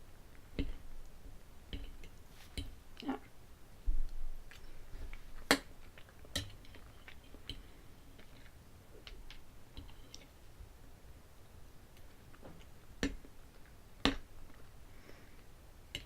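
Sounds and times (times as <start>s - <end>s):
person chewing food: 4.4s - 10.4s.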